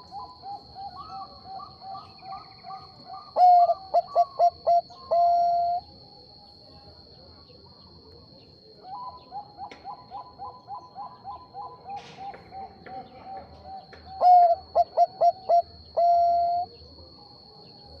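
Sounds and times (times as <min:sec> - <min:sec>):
dove cooing: 0:00.0 - 0:05.9, 0:08.8 - 0:16.8.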